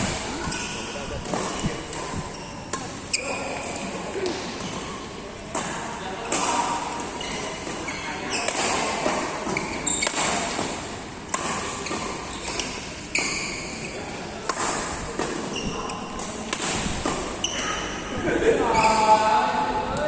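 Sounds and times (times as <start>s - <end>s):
shoes squeaking on court floor: 0.3s - 18.0s
racket striking shuttlecock: 5.5s - 7.8s, 8.4s - 15.5s, 16.2s - 17.8s.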